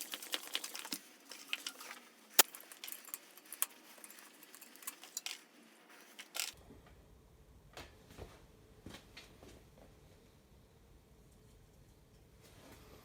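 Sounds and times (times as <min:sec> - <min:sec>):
small hard objects clicking: 0:00.0 - 0:06.6.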